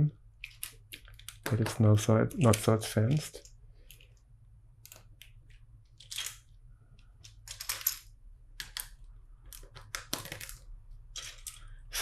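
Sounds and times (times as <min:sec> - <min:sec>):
plastic bricks clicking and rattling: 0:07.2 - 0:11.7.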